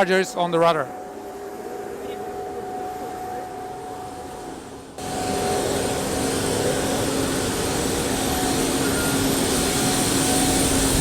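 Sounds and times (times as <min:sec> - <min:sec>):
turbine whine: 0:00.0 - 0:11.0
rushing exhaust noise: 0:03.7 - 0:11.0.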